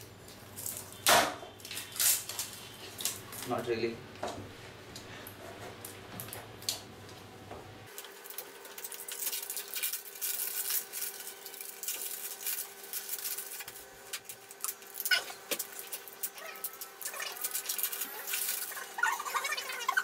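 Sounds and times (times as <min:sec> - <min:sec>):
packaging rustling and crinkling: 0:07.9 - 0:20.0.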